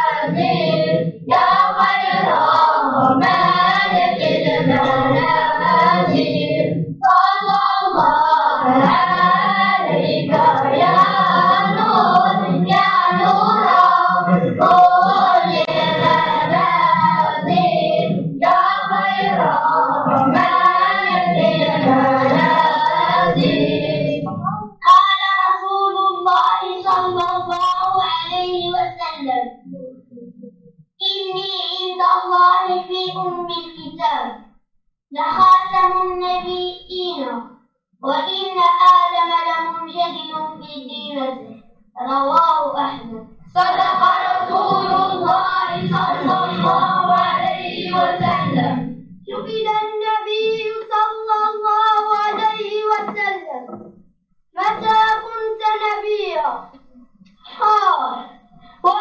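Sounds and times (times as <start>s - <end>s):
high vocal line: 0.0s - 25.4s, 26.0s - 30.4s, 35.2s - 35.8s, 41.2s - 49.4s
children singing together: 0.0s - 29.3s, 31.0s - 34.4s, 35.2s - 37.4s, 38.0s - 53.9s, 54.6s - 56.8s, 57.4s - 59.0s.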